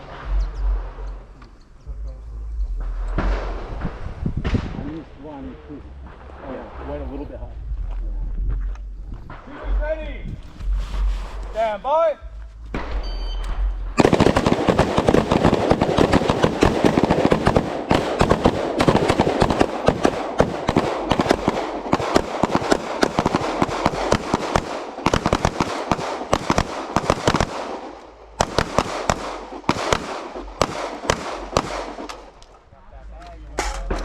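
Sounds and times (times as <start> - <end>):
rapid gunfire echoing: 14.0 - 32.4.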